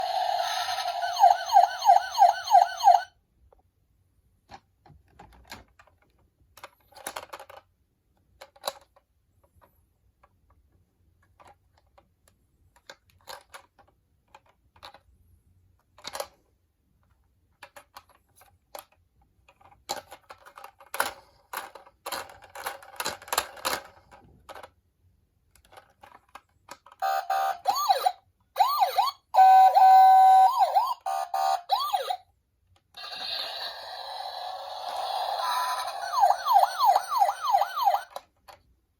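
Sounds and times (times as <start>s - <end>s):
electronic toy siren warbling: 0.0s - 3.1s, 27.0s - 32.2s, 33.0s - 38.2s
sweeping toy siren: 0.0s - 3.1s, 27.0s - 32.2s, 33.0s - 38.2s
toy cars clicking and rattling: 5.3s - 7.7s, 8.3s - 9.0s, 11.2s - 12.1s, 12.7s - 15.1s, 15.8s - 16.4s, 17.0s - 24.8s, 25.5s - 28.1s, 33.0s - 38.7s.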